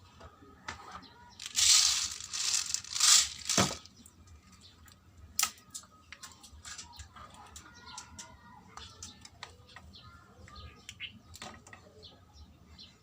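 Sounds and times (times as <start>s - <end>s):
plastic packet tearing and crinkling: 1.4s - 3.8s.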